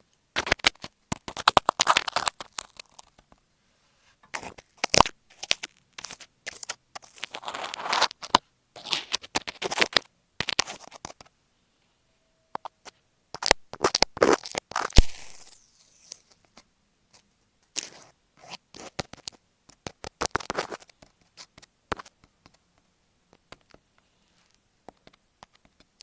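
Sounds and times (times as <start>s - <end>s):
tape scratching on microphone: 0.4s - 3.3s, 4.2s - 11.3s, 12.6s - 16.5s, 17.7s - 22.6s.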